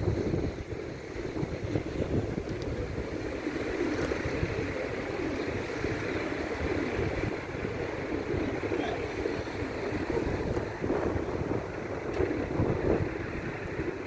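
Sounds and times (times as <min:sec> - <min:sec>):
wind rumbling on microphone: 0:00.0 - 0:14.0.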